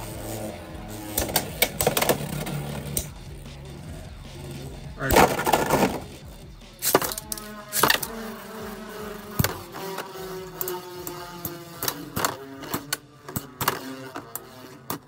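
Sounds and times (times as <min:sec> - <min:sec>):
spinning tops whirring: 0:00.0 - 0:15.0
spinning tops clacking: 0:05.0 - 0:15.0.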